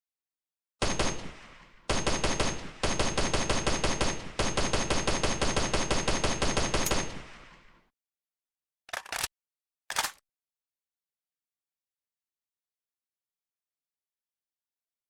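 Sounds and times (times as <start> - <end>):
assault rifle automatic fire: 9.9 - 10.2.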